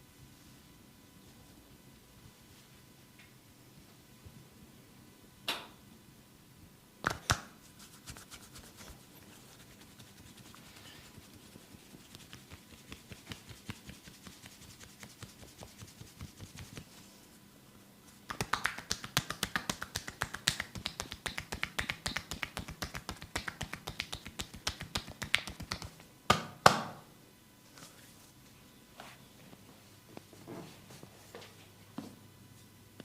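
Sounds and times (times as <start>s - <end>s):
hands tapping and snapping on body: 7.0s - 7.5s, 18.3s - 26.9s.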